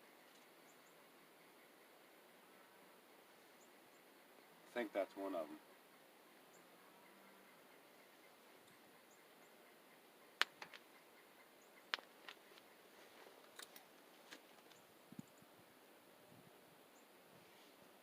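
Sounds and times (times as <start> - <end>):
faint high bird chirps: 0.0 - 2.3
sharp irregular clicks: 10.4 - 11.0.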